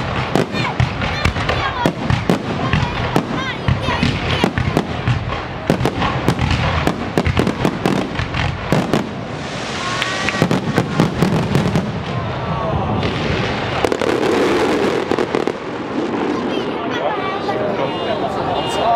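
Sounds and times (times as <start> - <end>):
fireworks bangs and pops: 0.0 - 16.7
fireworks crackling: 0.0 - 18.9
fireworks whistles: 3.9 - 12.2.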